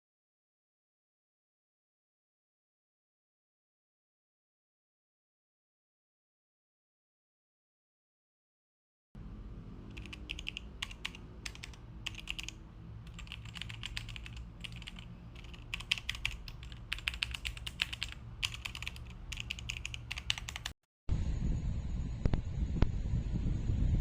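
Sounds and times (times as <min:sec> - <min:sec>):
steady low rumbling: 0:09.2 - 0:24.0
mechanical keyboard typing: 0:09.9 - 0:20.8.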